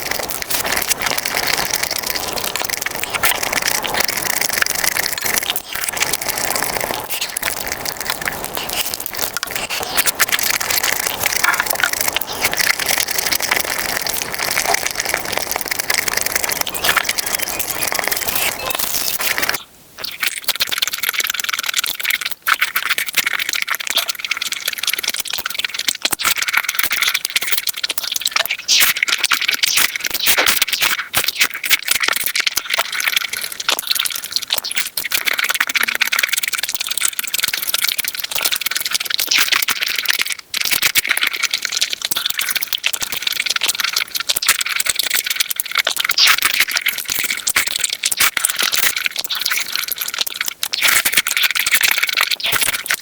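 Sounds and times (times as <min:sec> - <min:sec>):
sped-up chewing and crunching: 0:00.0 - 0:53.0.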